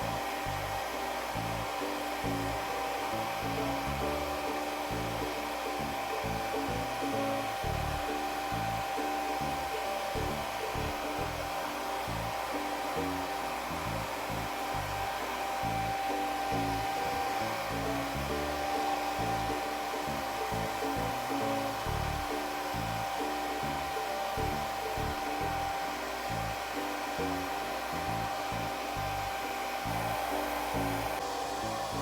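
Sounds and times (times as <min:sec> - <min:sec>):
background music: 0:00.0 - 0:32.0
hair dryer running: 0:00.0 - 0:32.0.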